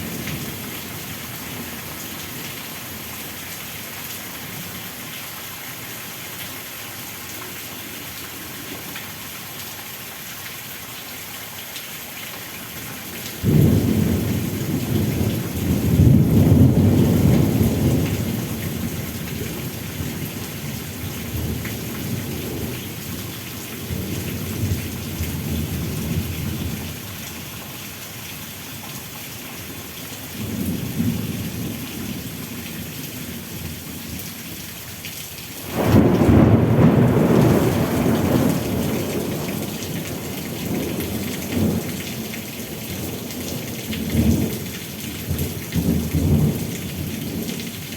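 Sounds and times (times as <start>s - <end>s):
steady rain hiss: 0.0s - 47.9s
thunderclap rumbling: 13.4s - 19.7s, 35.6s - 41.8s.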